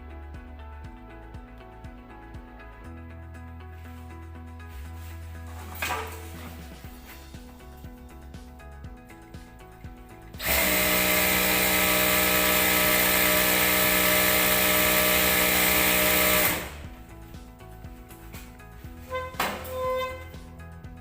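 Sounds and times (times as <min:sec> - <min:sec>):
faint background music: 0:00.0 - 0:21.0
sewing machine running: 0:10.4 - 0:16.9.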